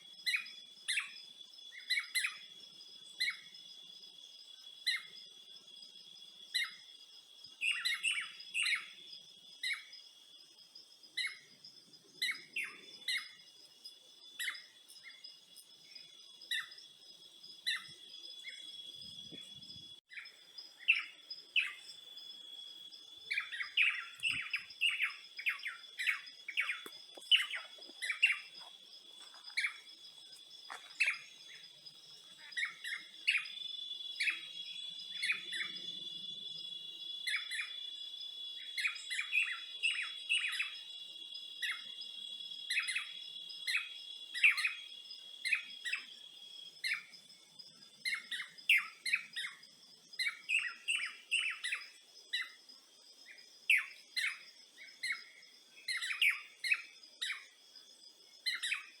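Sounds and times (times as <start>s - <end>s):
insect drone: 0.0s - 59.0s
birds chirping: 11.0s - 52.6s, 53.2s - 57.6s.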